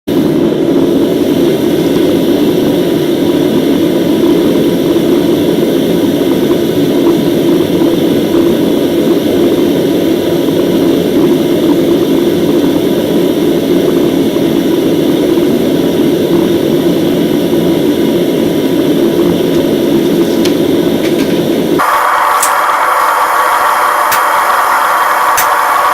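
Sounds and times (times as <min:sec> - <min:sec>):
forge rushing noise: 0:18.4 - 0:25.9.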